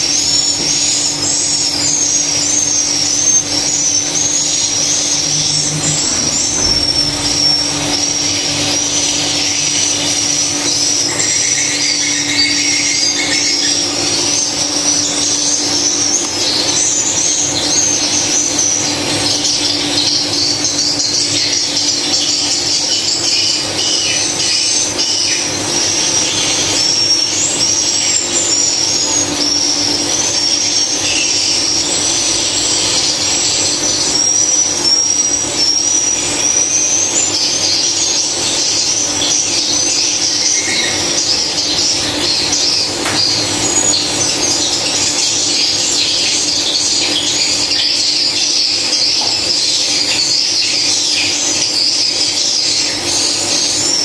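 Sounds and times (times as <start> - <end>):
steady low hum: 0.0 - 23.0
swiftlets twittering: 0.0 - 54.0.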